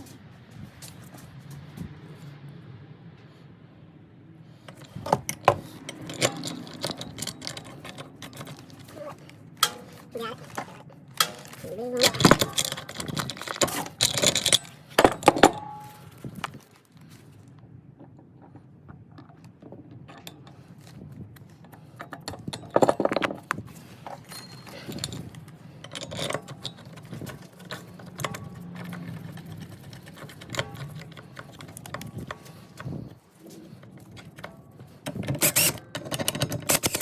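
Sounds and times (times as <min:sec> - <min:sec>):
metal tools clinking and rattling: 0:04.6 - 0:16.8, 0:20.0 - 0:37.0.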